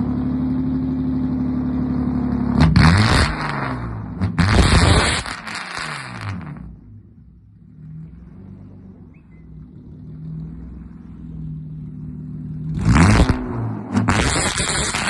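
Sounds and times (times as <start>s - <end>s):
car exhaust droning and revving: 0.0s - 15.0s.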